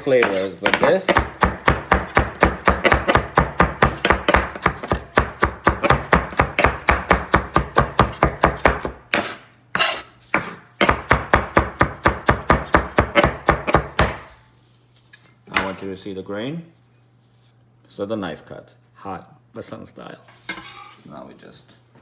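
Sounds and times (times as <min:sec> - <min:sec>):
knife chopping herbs: 0:00.0 - 0:14.4.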